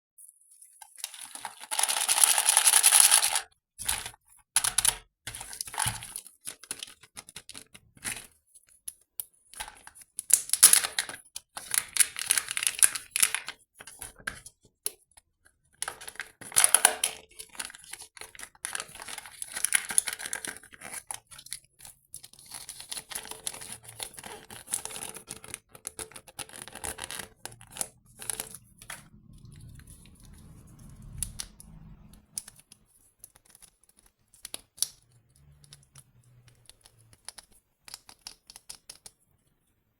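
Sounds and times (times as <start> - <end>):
small clicks and taps: 31.2 - 39.2.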